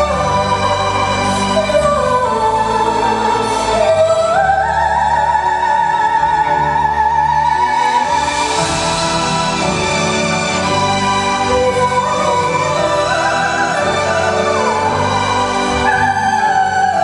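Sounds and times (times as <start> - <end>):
orchestra playing: 0.0 - 17.0
soprano singing operatic melody: 0.0 - 17.0.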